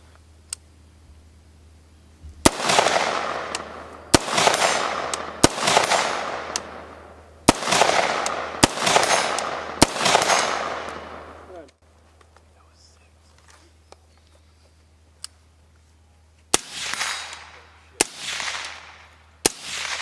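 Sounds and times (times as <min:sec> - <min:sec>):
rifle shots echoing: 0:02.4 - 0:11.7, 0:16.5 - 0:20.0.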